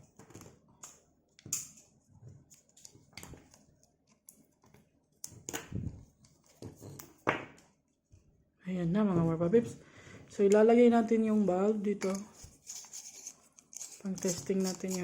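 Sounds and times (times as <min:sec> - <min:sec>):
hands handling wires and parts: 0:12.0 - 0:15.0.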